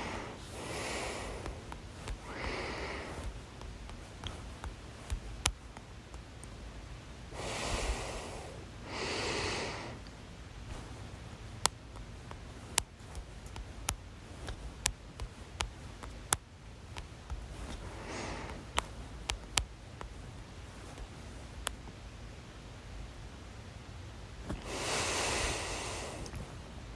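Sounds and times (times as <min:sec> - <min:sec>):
noisy breaths: 0:00.0 - 0:05.8, 0:07.3 - 0:11.4, 0:17.0 - 0:21.6, 0:24.5 - 0:26.9.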